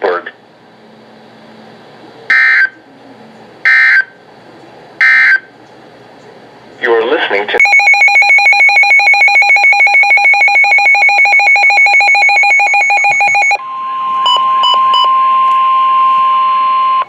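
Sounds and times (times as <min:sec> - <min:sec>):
fast pulsing alarm beep: 0:02.3 - 0:02.8, 0:03.7 - 0:04.1, 0:05.0 - 0:05.5, 0:07.6 - 0:17.0
steady single-pitch alarm tone: 0:02.3 - 0:02.8, 0:03.7 - 0:04.1, 0:05.0 - 0:05.5, 0:07.6 - 0:17.0
short beeps: 0:07.6 - 0:17.0.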